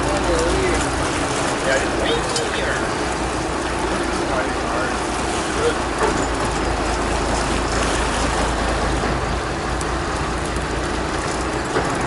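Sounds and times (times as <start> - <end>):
boat engine humming: 0.0 - 12.0
wind and water rushing: 0.0 - 12.0.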